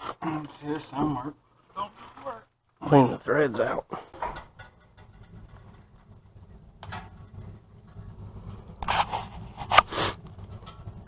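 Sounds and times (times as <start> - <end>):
low steady hum: 0.0 - 11.0
wire brush scraping metal threads: 4.2 - 11.0.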